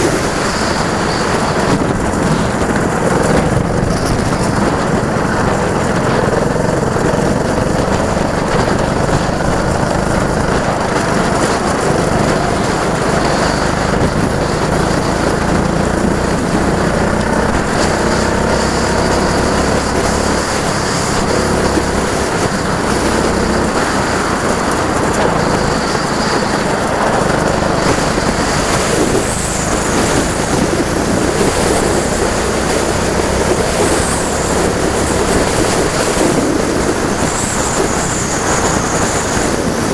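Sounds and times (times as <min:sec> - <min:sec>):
go-kart engines running: 0:00.0 - 0:39.9.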